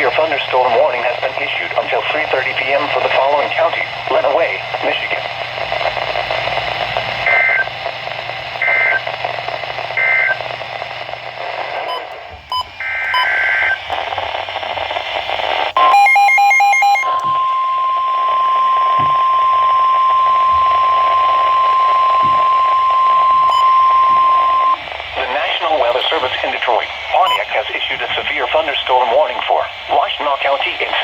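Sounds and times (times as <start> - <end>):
radio reception hiss: 0.0 - 16.0, 16.8 - 31.0
steady warning alarm tone: 10.0 - 10.4, 15.8 - 29.7
two-tone data chirps: 15.8 - 24.8, 27.1 - 27.6.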